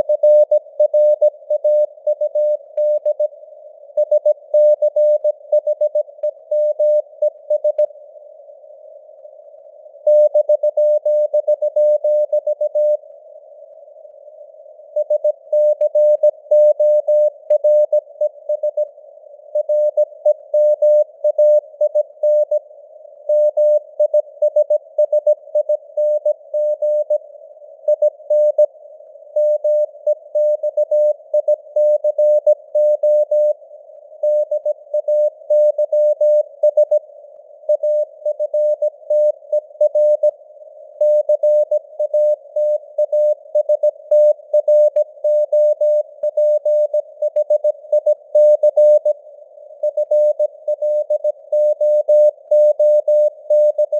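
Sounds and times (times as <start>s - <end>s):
morse code tone: 41.0s - 49.1s.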